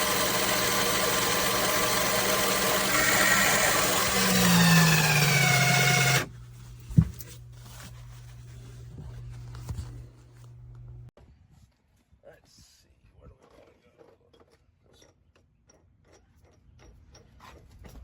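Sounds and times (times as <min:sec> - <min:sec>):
motor running loudly: 0:00.0 - 0:06.3
low steady hum: 0:06.0 - 0:11.1.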